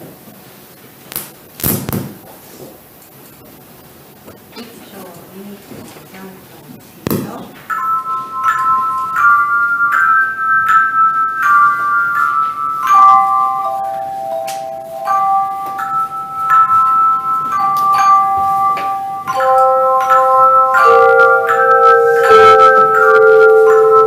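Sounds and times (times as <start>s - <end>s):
tone chimes melody: 7.7s - 24.0s.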